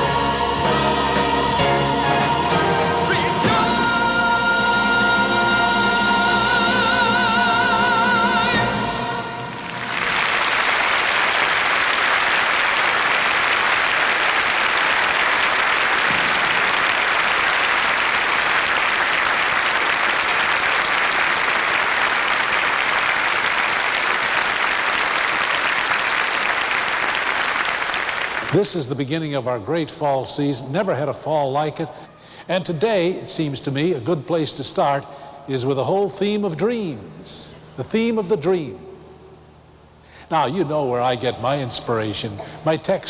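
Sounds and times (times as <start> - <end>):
choir holding a chord: 0.0 - 9.9
applause: 9.6 - 28.6.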